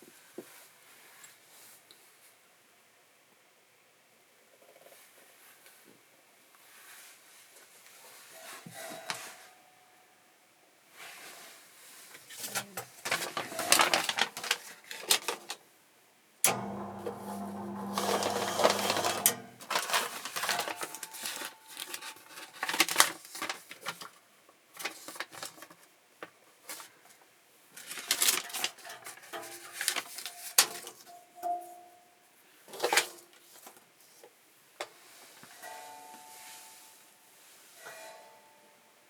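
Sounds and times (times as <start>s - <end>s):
short steady hum: 16.5s - 19.8s
clicks and rattles of hard parts: 16.5s - 23.2s, 28.1s - 31.0s.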